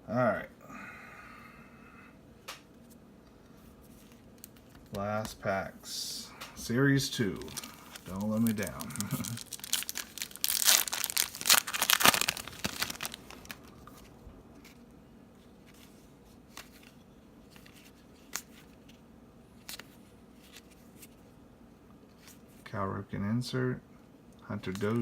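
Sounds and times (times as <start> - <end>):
cards clicking and shuffling: 7.2 - 14.8, 15.6 - 19.0, 19.6 - 21.2, 24.6 - 25.0
foil wrapper tearing and crinkling: 7.3 - 13.8.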